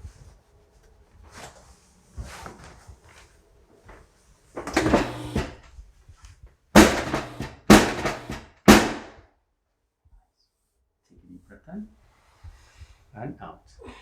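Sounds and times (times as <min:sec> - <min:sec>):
heavy drum strikes: 0:04.8 - 0:05.6, 0:06.8 - 0:09.2.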